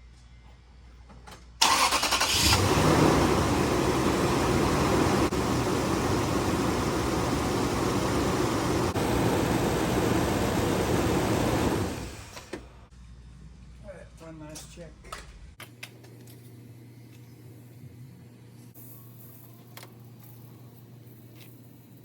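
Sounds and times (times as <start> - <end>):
car engine starting and idling: 1.6 - 12.6.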